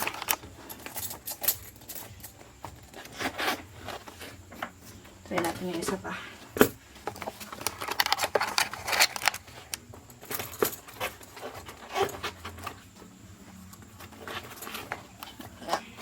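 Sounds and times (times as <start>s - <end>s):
metal chain clinking: 0.0s - 4.4s, 5.2s - 16.0s.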